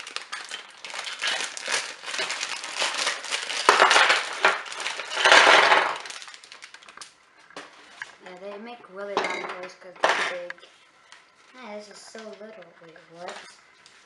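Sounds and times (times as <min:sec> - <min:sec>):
packaging crinkling: 0:00.0 - 0:07.2.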